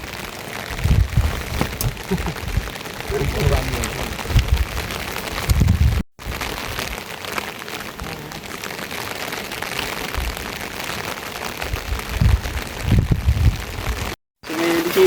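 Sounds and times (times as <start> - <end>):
steady rain: 0.0 - 15.0
low thumps: 0.8 - 6.0.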